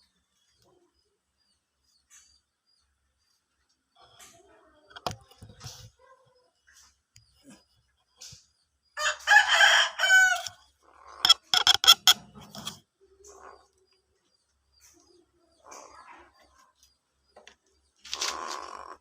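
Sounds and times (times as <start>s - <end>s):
bird crowing call: 9.0s - 10.6s
soft bird calls: 10.3s - 19.0s.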